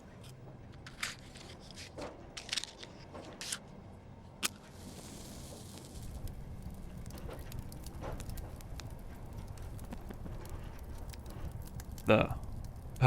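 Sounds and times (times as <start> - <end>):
fire hissing softly: 4.2 - 13.0
firewood knocking and crackling: 4.4 - 13.0.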